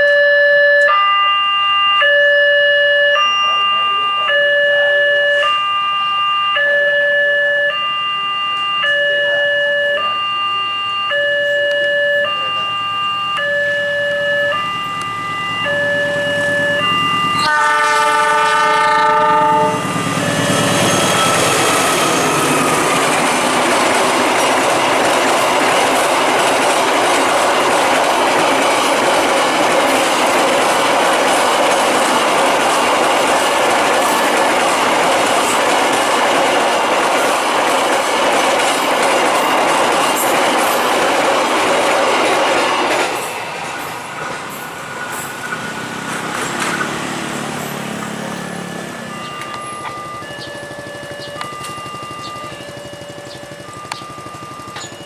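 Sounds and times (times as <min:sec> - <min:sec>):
two-tone warning chime: 0:00.0 - 0:43.5, 0:46.4 - 0:55.0
train rumbling and wheel clatter: 0:13.4 - 0:55.0
train horn: 0:14.5 - 0:22.2.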